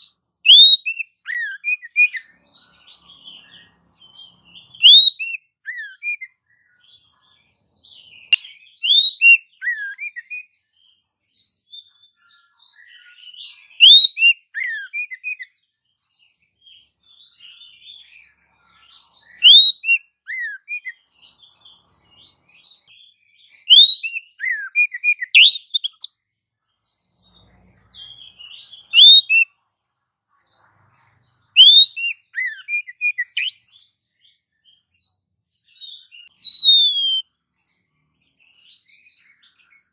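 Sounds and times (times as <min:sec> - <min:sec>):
rising whistle bird call: 0:00.4 - 0:02.2, 0:04.7 - 0:06.2, 0:08.2 - 0:10.5, 0:13.8 - 0:15.4, 0:19.3 - 0:20.9, 0:23.6 - 0:26.1, 0:28.5 - 0:29.5, 0:31.4 - 0:33.6, 0:36.0 - 0:37.4
soft high chirping: 0:23.6 - 0:26.2, 0:34.9 - 0:39.9.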